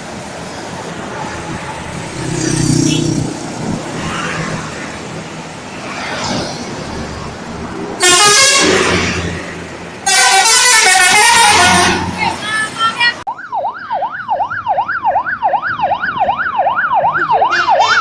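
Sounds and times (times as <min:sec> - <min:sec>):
bus engines running: 0:00.0 - 0:18.0
multi-tone musical air horn: 0:08.0 - 0:09.1, 0:10.0 - 0:12.2.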